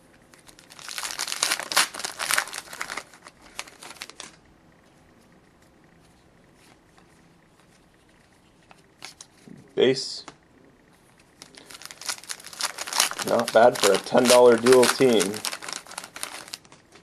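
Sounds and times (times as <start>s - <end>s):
wrapper tearing and crinkling: 0.3s - 4.4s, 11.4s - 17.0s.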